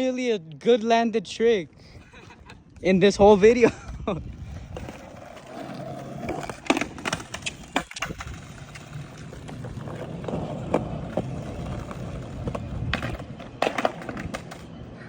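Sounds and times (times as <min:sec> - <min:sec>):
skateboard wheels rolling on pavement: 0:00.0 - 0:15.0
skateboard clacks: 0:04.6 - 0:14.9.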